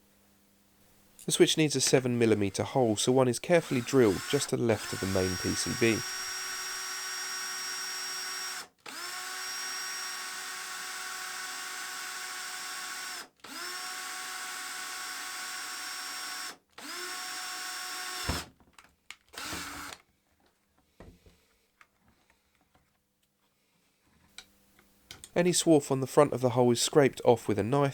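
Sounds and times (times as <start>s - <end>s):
power drill boring through plastic: 3.4s - 18.6s, 19.2s - 20.1s.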